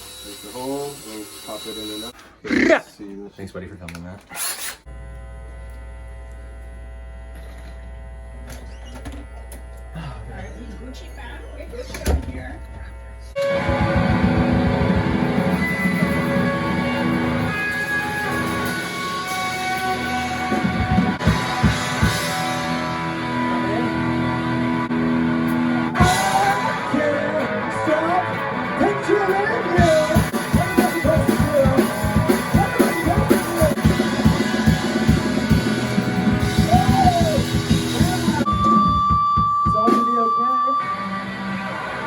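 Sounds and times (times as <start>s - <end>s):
guitar chords: 13.2s - 42.0s
drums: 13.3s - 42.0s
person singing: 25.8s - 33.9s.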